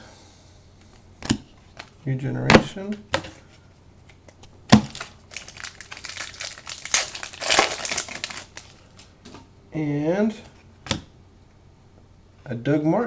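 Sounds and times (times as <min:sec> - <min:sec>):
plastic wrapper crinkling: 0:04.1 - 0:09.2.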